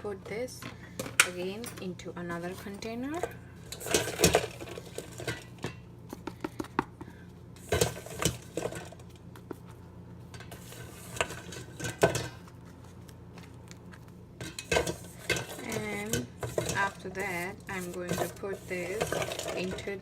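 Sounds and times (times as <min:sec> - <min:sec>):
spoon scraping a bowl: 0:14.5 - 0:19.9.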